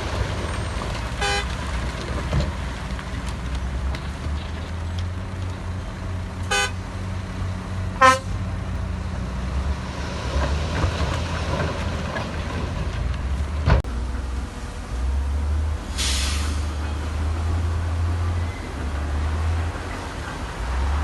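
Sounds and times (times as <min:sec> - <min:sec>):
diesel machinery droning: 0:00.0 - 0:21.0
vehicle horn toots: 0:01.2 - 0:01.5, 0:06.5 - 0:06.8, 0:08.0 - 0:08.4.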